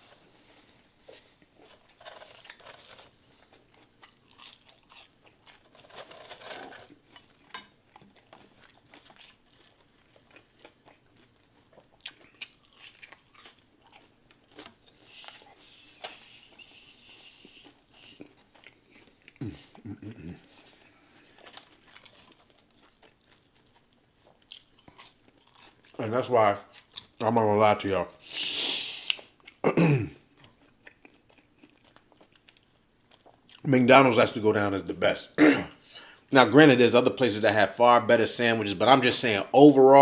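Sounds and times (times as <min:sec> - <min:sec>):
chewing and crunching food: 0:00.0 - 0:28.0, 0:30.2 - 0:33.7.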